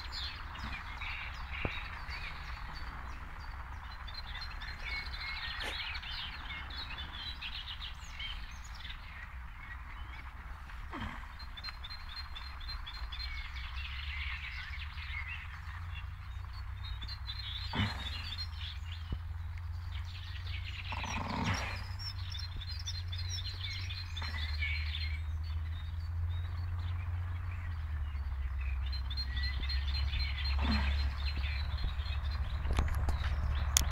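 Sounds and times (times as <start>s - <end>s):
low rumble: 0.0s - 33.9s
songbirds chirping: 0.0s - 33.9s
horse snoring: 10.8s - 11.5s, 17.6s - 18.4s, 20.7s - 22.0s.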